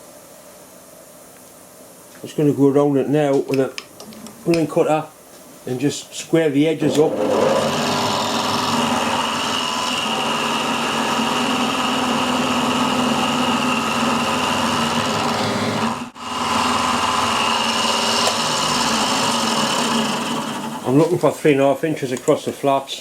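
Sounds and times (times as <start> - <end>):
milling machine whine: 6.6 - 20.9
milling cutter cutting steel: 6.8 - 20.9.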